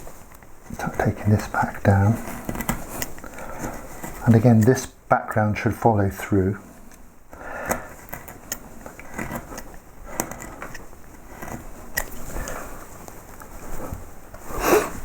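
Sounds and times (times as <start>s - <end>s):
gouges slicing and scraping wood: 7.7s - 12.5s.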